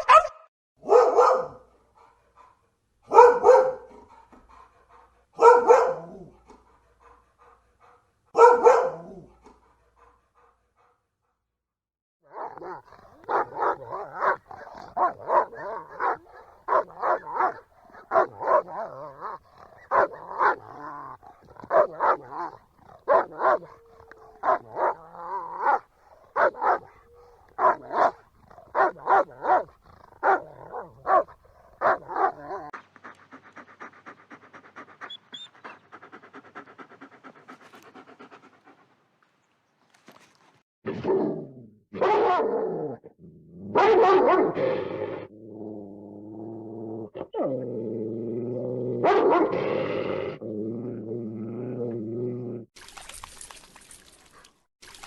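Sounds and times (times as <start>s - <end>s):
dog barking: 0.0s - 4.3s, 5.4s - 6.4s, 8.3s - 9.4s, 12.3s - 20.8s, 21.4s - 32.8s, 42.0s - 42.6s, 43.7s - 44.6s, 49.0s - 49.6s
dog panting: 1.7s - 8.5s, 9.3s - 11.4s, 25.7s - 39.4s.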